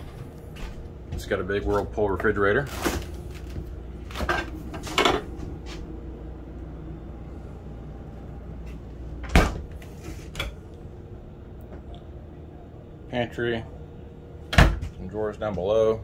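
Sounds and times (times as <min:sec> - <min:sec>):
doors opening and shutting: 0:08.2 - 0:10.6.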